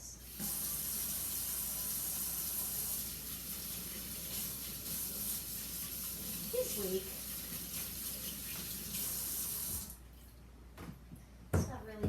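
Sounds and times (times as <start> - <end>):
tap water running into sink: 0.2 - 10.0.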